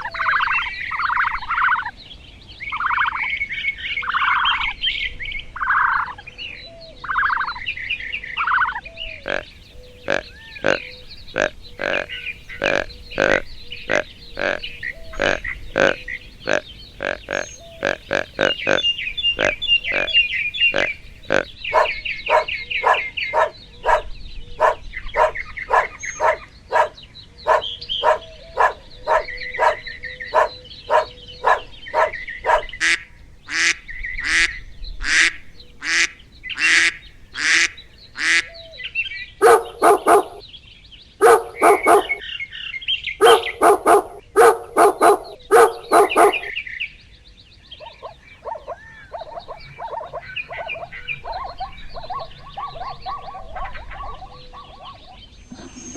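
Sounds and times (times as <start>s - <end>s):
animal calling loudly: 8.4s - 24.0s, 24.6s - 38.6s, 39.4s - 40.4s, 41.2s - 42.2s, 43.2s - 46.5s, 47.8s - 55.9s.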